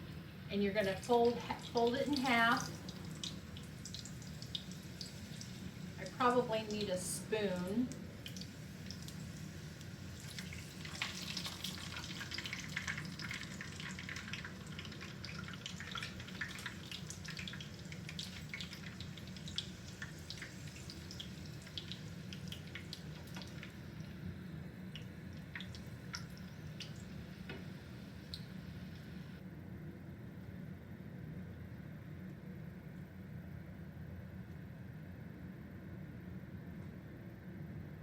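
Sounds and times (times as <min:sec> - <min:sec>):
low steady hum: 0:00.0 - 0:38.0
frying oil crackling: 0:00.6 - 0:29.4.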